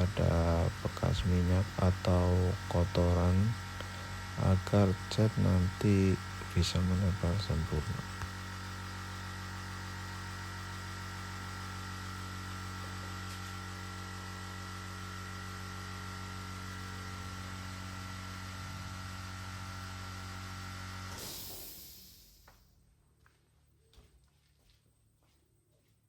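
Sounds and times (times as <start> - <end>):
faint high whine: 0.0 - 9.3, 21.1 - 24.2
electrical machine hum: 0.0 - 23.7.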